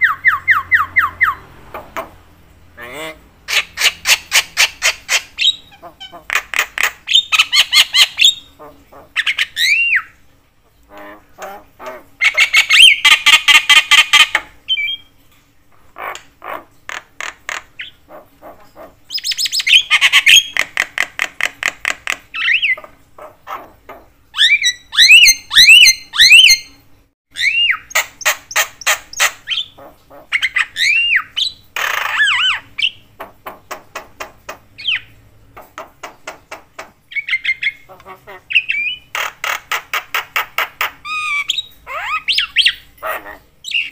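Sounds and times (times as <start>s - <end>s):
myna calling: 36.8s - 43.9s.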